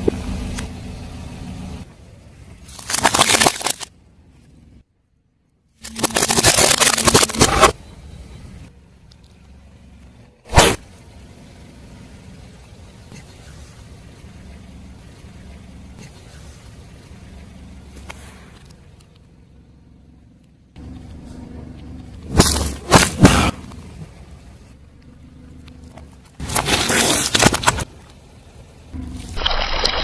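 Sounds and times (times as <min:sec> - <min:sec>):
car rolling rumble: 0:00.0 - 0:05.0, 0:05.9 - 0:30.0
loud cracks: 0:02.7 - 0:03.9, 0:05.8 - 0:07.7
tyre crushing crunchy objects: 0:02.7 - 0:03.9, 0:05.8 - 0:07.8, 0:22.2 - 0:24.0, 0:25.9 - 0:28.0.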